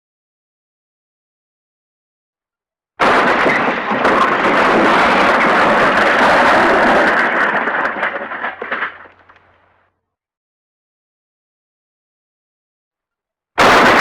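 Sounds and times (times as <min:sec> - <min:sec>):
loud crash with clattering: 0:03.0 - 0:09.6, 0:13.6 - 0:14.0.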